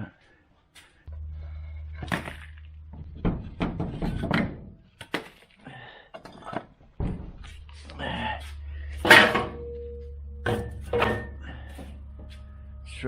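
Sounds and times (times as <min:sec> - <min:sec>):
low steady hum: 0:01.1 - 0:04.9, 0:07.0 - 0:13.0
jack and wood blocks thunking: 0:01.9 - 0:07.6.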